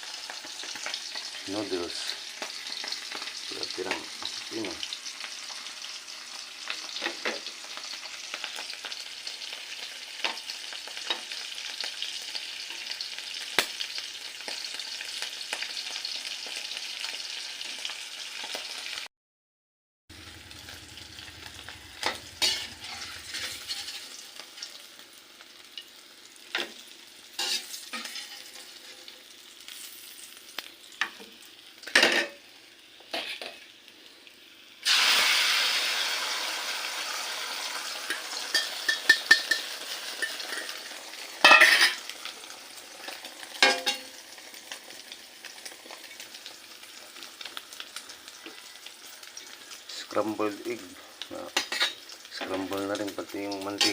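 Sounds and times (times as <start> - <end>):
fish sizzling in oil: 0.0 - 19.1, 20.1 - 53.9
spatula scraping pan: 22.0 - 24.7, 27.4 - 29.1.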